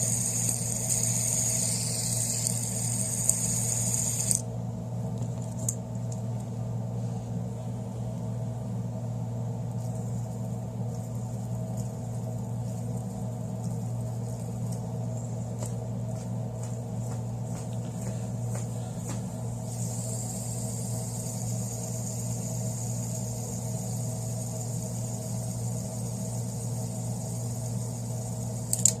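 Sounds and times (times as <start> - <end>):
thin high hiss: 0.0 - 4.4, 19.4 - 29.0
fidget spinner whirring: 0.0 - 4.5, 19.0 - 29.0.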